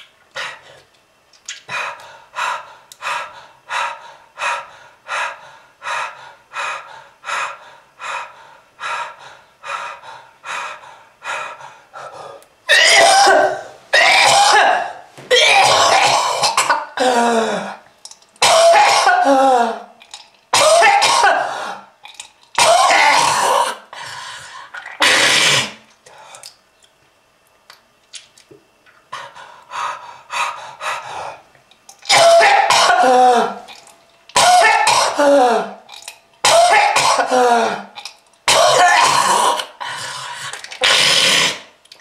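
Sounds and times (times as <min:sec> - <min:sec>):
person coughing: 0:12.7 - 0:17.8, 0:18.4 - 0:19.9, 0:20.6 - 0:21.7, 0:22.6 - 0:23.8, 0:32.1 - 0:33.7, 0:34.4 - 0:35.8, 0:36.4 - 0:39.7
groan: 0:18.5 - 0:19.9, 0:34.5 - 0:35.8.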